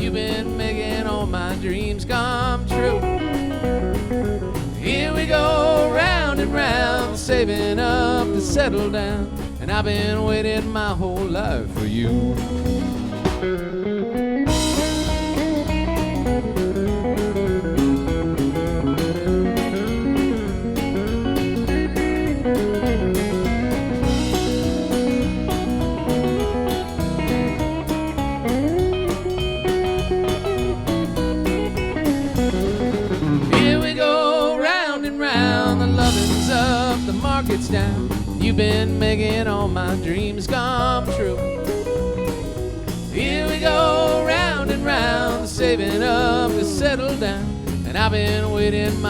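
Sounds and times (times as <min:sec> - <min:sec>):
person singing: 0:00.0 - 0:03.2, 0:04.8 - 0:12.4, 0:33.5 - 0:41.5, 0:43.1 - 0:49.0
lead guitar bending notes: 0:00.0 - 0:11.0, 0:11.9 - 0:34.4, 0:35.3 - 0:49.0
drum kit beat: 0:00.0 - 0:13.8, 0:14.5 - 0:49.0.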